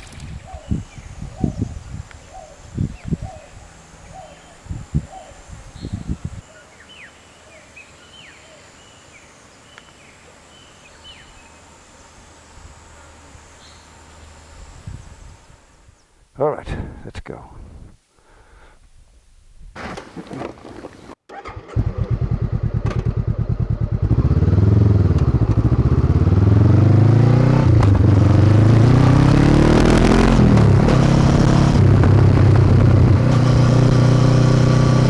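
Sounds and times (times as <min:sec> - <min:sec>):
motorcycle engine revving: 0:21.3 - 0:35.0.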